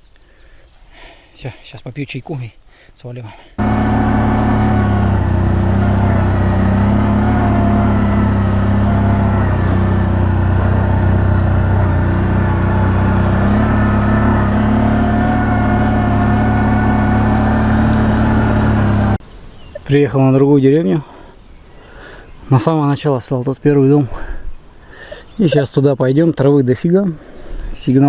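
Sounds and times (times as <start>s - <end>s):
quad bike engine running: 3.6s - 19.2s.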